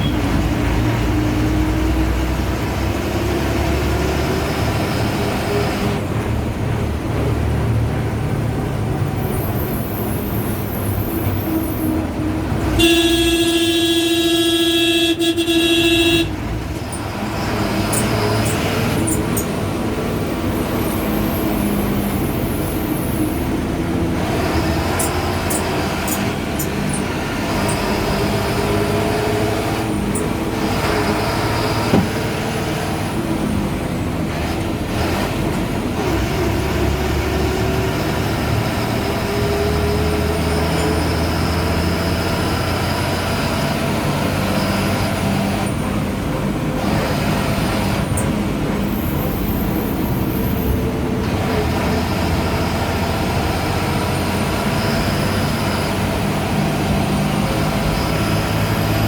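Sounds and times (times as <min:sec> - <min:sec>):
bus diesel engine running: 0:00.0 - 0:59.0.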